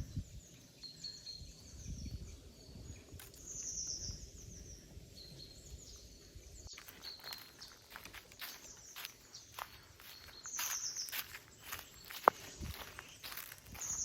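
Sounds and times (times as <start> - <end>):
small songbirds chirping: 0.0 - 14.0
footstep crunching dry leaves: 6.7 - 14.0.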